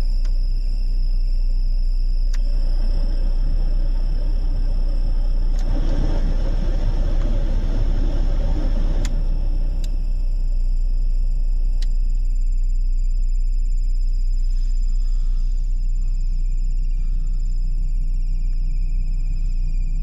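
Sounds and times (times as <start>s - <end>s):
heater blower whistling: 2.3s - 10.7s
air rushing: 2.4s - 10.4s.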